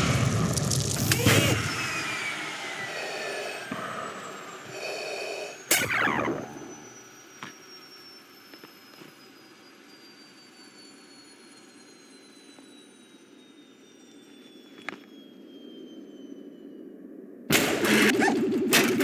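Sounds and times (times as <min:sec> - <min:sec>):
low rumbling hum: 0:00.0 - 0:07.2
high whine falling in pitch: 0:00.0 - 0:19.0.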